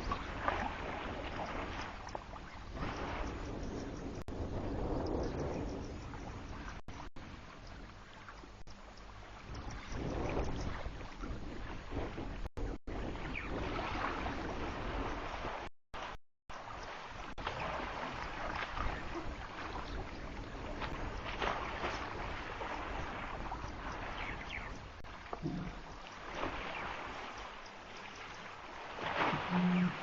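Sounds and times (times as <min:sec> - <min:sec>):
water splashing: 0:00.0 - 0:04.2, 0:13.1 - 0:30.0
wind on microphone: 0:00.0 - 0:27.4.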